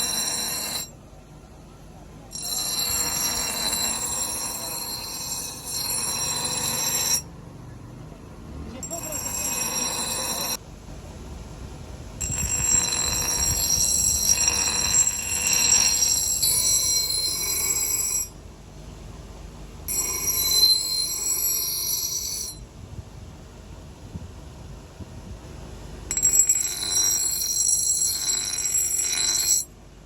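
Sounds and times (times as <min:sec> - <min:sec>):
power grinder on steel: 0:00.0 - 0:00.9, 0:02.3 - 0:07.3, 0:08.8 - 0:10.6, 0:12.2 - 0:18.3, 0:26.1 - 0:29.7.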